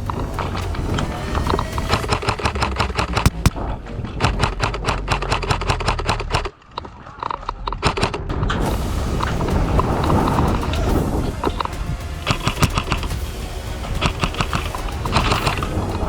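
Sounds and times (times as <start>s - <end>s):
airsoft rifle shots: 3.3s - 3.6s.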